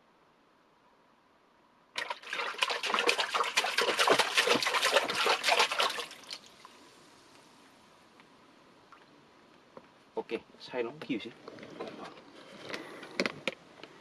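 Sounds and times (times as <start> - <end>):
water splashed by hands: 2.0 - 6.7.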